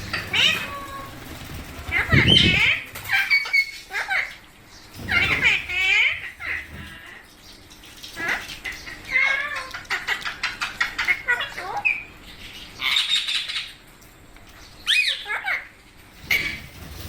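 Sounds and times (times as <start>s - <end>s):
parakeet squawk: 0.0s - 1.1s, 1.9s - 4.4s, 5.1s - 7.2s, 8.1s - 13.8s, 14.8s - 16.8s
parakeets chirping and clicking: 0.0s - 17.0s.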